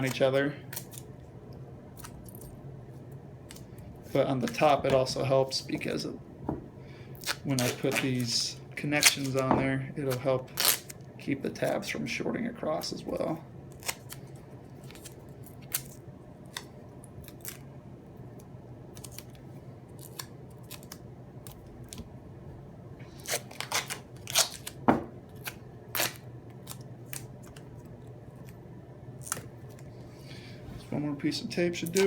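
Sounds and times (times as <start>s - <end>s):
steady low hum: 0.0s - 32.0s
tape tearing and snipping: 9.0s - 9.4s, 10.1s - 11.0s, 23.2s - 24.8s, 25.4s - 27.6s.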